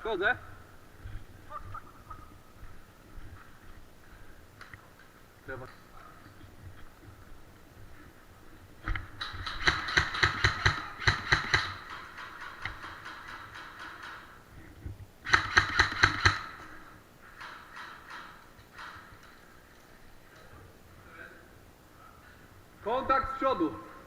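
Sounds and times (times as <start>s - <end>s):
airsoft guns firing rapidly: 9.2s - 14.3s, 15.2s - 16.8s.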